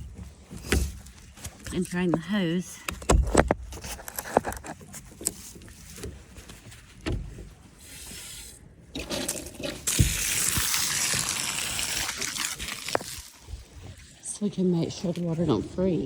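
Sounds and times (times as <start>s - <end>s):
water pouring from a hose: 7.8s - 14.2s.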